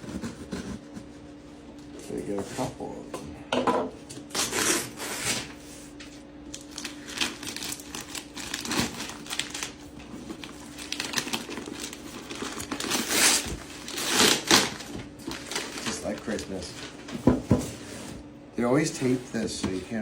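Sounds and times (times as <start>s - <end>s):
packaging ripping: 4.3s - 5.6s, 6.5s - 17.0s
packaging crinkling: 6.0s - 17.1s.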